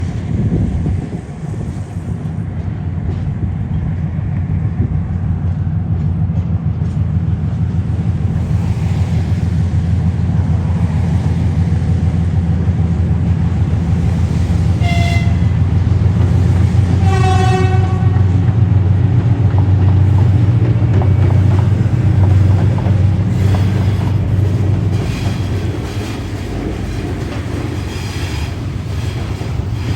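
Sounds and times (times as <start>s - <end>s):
train rumbling past: 0.0s - 29.9s
locomotive horn: 14.8s - 15.8s, 16.9s - 18.5s.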